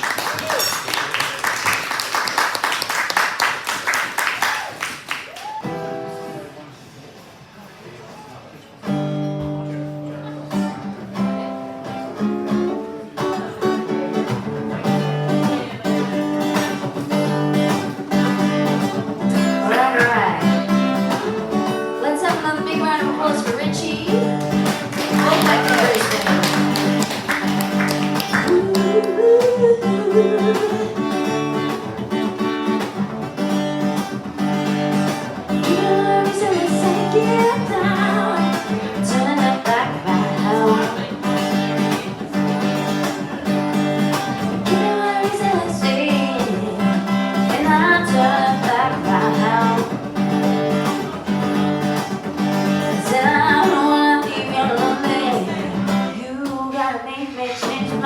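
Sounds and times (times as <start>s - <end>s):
acoustic guitar strumming: 8.8s - 58.0s
person singing: 19.2s - 32.3s, 35.6s - 43.4s, 44.5s - 50.1s, 52.9s - 58.0s.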